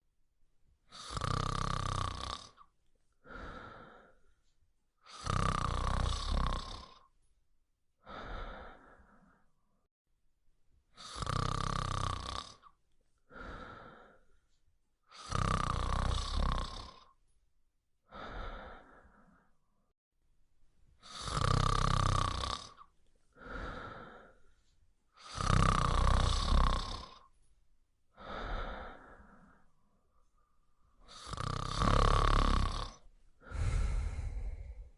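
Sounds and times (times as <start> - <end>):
dog snoring loudly: 1.0 - 2.6, 5.1 - 7.0, 11.0 - 12.6, 15.2 - 17.1, 21.1 - 22.8, 25.2 - 27.2, 31.1 - 33.0.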